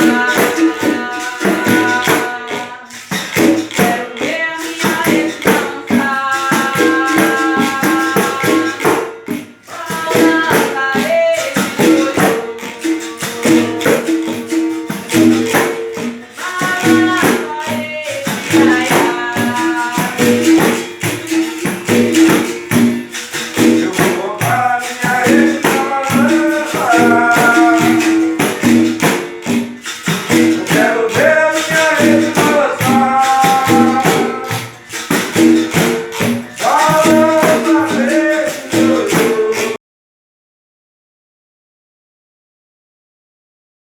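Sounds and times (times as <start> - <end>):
person singing: 0.0 - 22.6, 23.2 - 29.1, 29.8 - 39.8
berimbau: 0.0 - 39.8
shaker rattle: 0.0 - 39.8
tambourine rhythm: 0.0 - 39.8.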